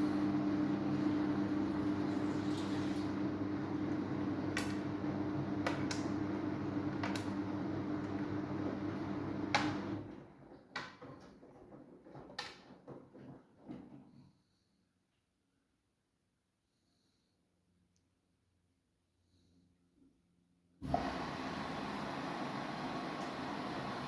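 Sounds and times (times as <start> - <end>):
washing machine motor hum: 0.0 - 10.4, 20.8 - 24.0
knocks and rustles: 10.4 - 14.3.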